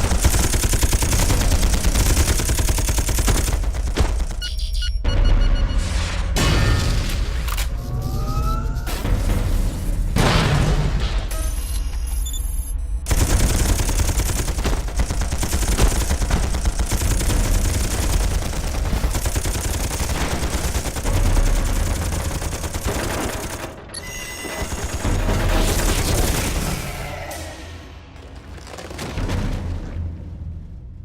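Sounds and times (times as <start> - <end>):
rapid automatic gunfire: 0.0 - 4.5, 13.1 - 26.9.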